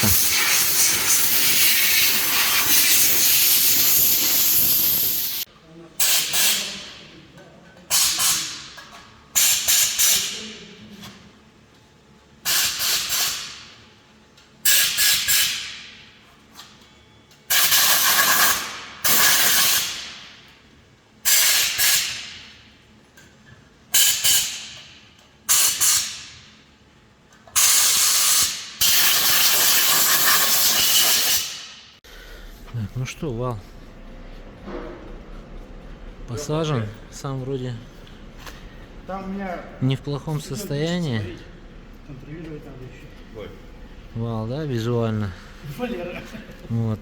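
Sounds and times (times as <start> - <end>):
compressed air hissing: 0.0 - 6.7, 27.6 - 32.6.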